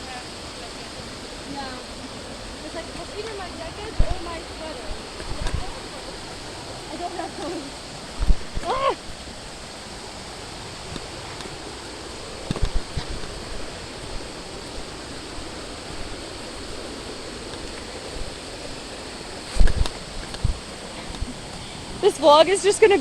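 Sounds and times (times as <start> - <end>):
running water rushing: 0.0 - 23.0
low thumps: 1.8 - 8.9.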